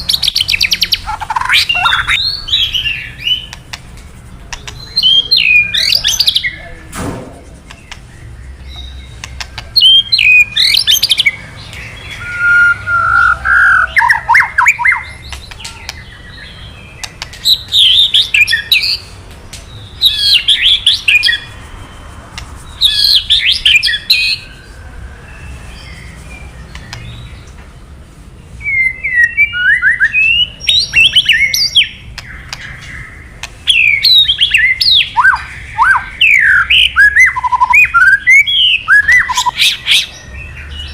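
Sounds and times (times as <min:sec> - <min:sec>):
bird crackling call: 0:00.1 - 0:06.3.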